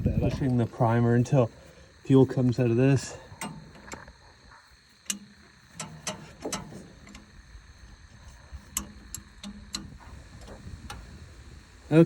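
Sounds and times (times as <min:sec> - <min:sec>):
fuel primer pump clicking: 0:03.0 - 0:12.0.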